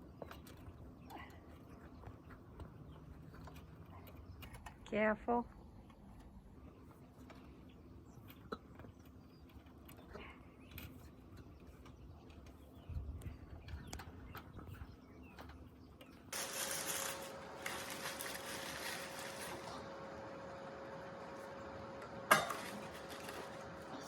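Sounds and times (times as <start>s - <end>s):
motor humming: 16.4s - 24.0s.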